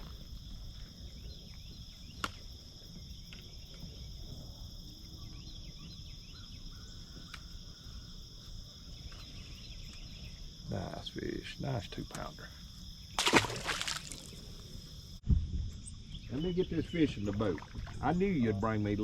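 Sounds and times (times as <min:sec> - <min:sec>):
insects chirring: 0:00.0 - 0:19.0.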